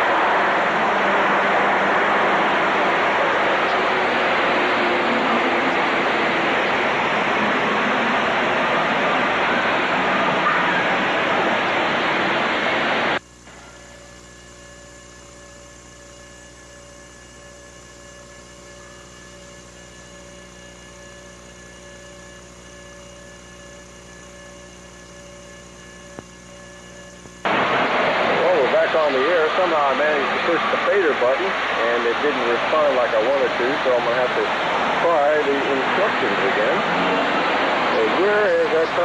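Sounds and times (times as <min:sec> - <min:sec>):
loud rushing noise: 0:00.0 - 0:13.2, 0:27.4 - 0:39.0
electrical hum: 0:00.0 - 0:39.0.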